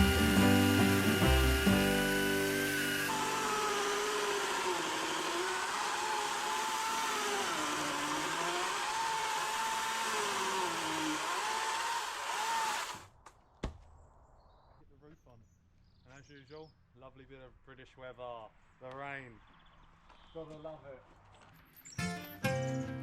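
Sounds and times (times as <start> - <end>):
power tool motor running: 0.0 - 13.1.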